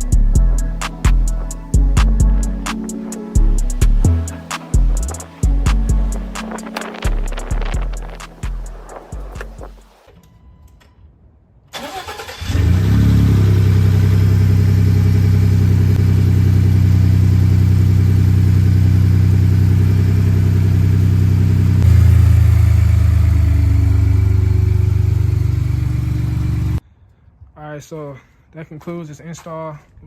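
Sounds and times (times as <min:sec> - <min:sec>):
pickup engine cranking and idling: 0:11.8 - 0:26.8.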